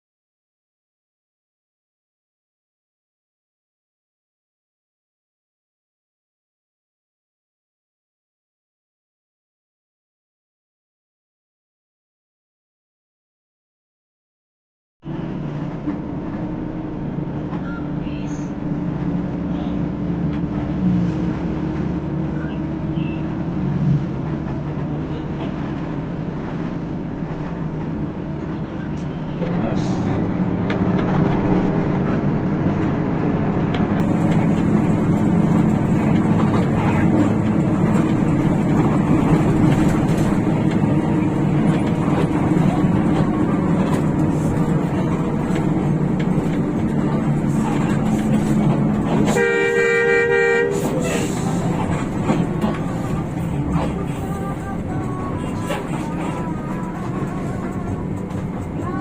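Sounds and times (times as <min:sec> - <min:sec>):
road noise: 0:15.0 - 0:59.0
bus diesel engine droning: 0:15.1 - 0:59.0
multi-tone horn blast: 0:49.0 - 0:52.7.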